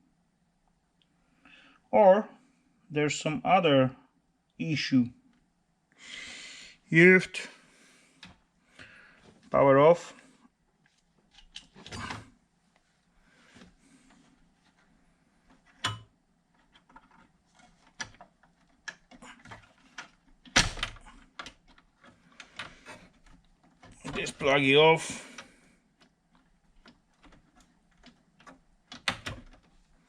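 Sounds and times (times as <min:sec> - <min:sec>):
handling clicks and rustles: 0:13.6 - 0:30.0.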